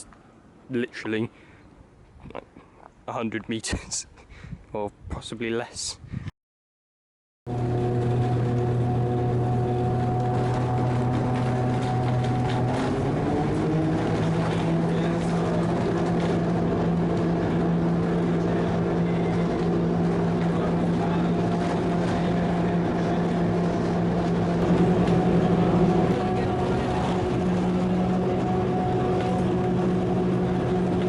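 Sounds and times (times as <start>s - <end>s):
railway car electric motor humming: 7.5s - 31.0s.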